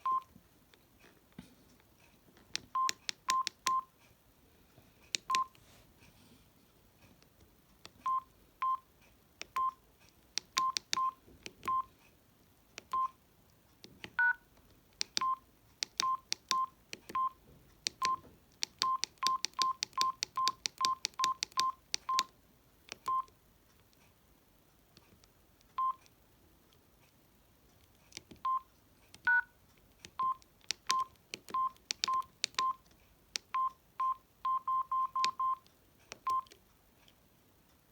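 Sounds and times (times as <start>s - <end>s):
phone keypad beeps: 0.0s - 0.3s, 2.7s - 3.9s, 5.2s - 5.6s, 8.0s - 8.8s, 9.5s - 9.8s, 10.5s - 11.9s, 12.8s - 13.2s, 14.2s - 14.4s, 15.1s - 15.4s, 16.0s - 22.3s, 22.9s - 23.3s, 25.7s - 26.0s, 28.4s - 29.5s, 30.1s - 32.8s, 33.4s - 35.6s, 36.2s - 36.6s
key clicks: 2.5s - 3.8s, 10.3s - 11.9s, 14.9s - 22.3s, 27.8s - 33.7s, 35.1s - 36.6s.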